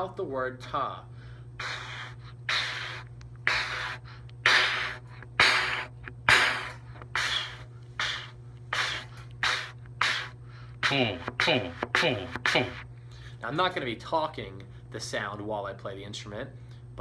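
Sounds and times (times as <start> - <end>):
steady low hum: 0.0 - 17.0
short puffs of breath: 1.1 - 13.4.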